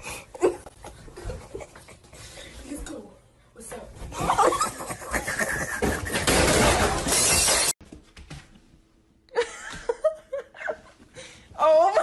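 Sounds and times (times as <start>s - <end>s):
loud crashing and shattering: 5.8s - 7.8s.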